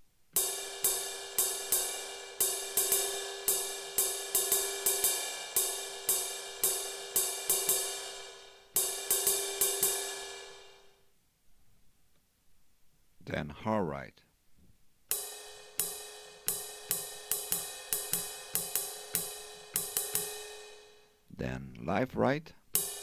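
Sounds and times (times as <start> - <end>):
ride cymbal sample hits: 0.4 - 10.9, 15.1 - 21.1, 22.8 - 23.0.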